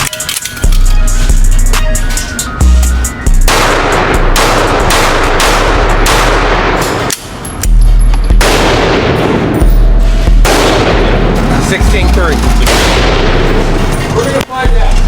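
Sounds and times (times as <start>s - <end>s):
handgun shots echoing: 3.5s - 7.8s, 12.6s - 13.6s.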